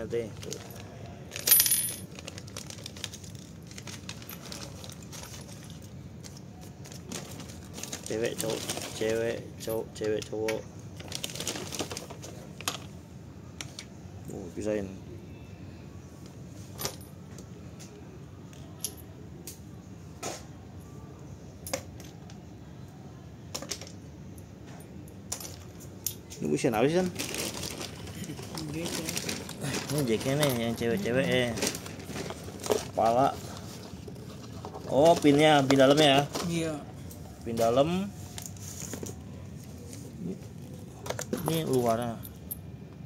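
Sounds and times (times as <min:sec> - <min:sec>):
small metal parts clinking: 0:00.0 - 0:12.8, 0:18.5 - 0:19.1, 0:23.6 - 0:33.2
low background hum: 0:00.0 - 0:43.0.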